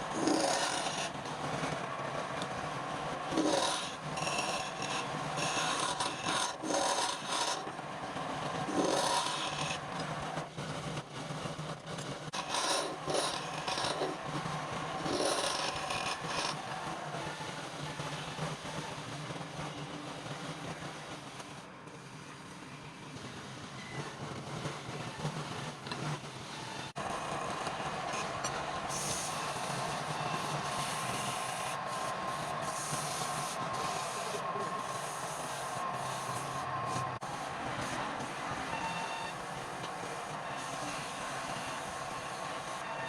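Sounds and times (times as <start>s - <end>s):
wood rasping strokes: 0.1s - 1.2s, 3.2s - 7.8s, 8.7s - 9.9s, 12.4s - 14.3s, 15.0s - 16.6s.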